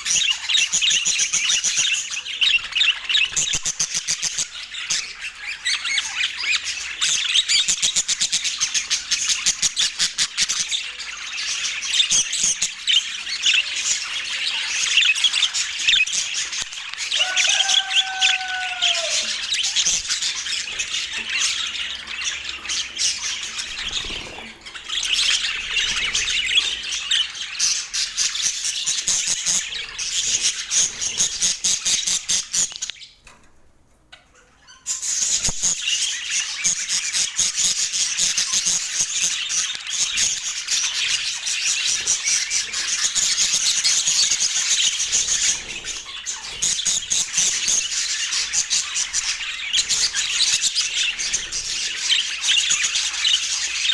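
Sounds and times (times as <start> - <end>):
budgerigars chattering and warbling: 0.0 - 33.2, 34.2 - 53.9
lower falling bird call: 17.2 - 19.5.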